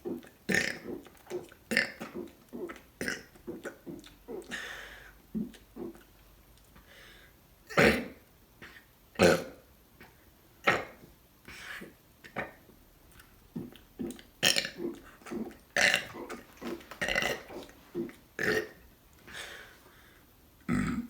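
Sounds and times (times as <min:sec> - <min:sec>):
person burping: 0:00.0 - 0:04.7, 0:13.6 - 0:18.8, 0:20.7 - 0:21.0.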